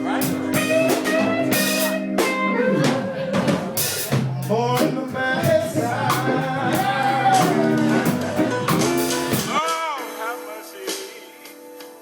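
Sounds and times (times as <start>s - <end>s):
blues guitar bending notes: 0.0s - 9.6s
drums: 0.0s - 12.0s.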